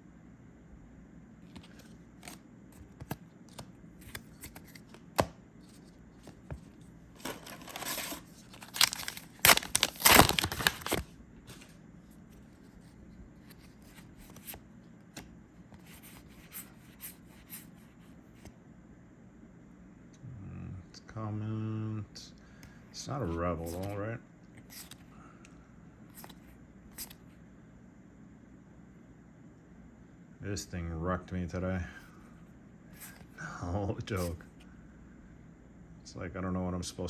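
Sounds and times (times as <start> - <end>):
cards clicking and flicking: 1.4 - 5.4
foil wrapper tearing and crinkling: 7.2 - 11.7.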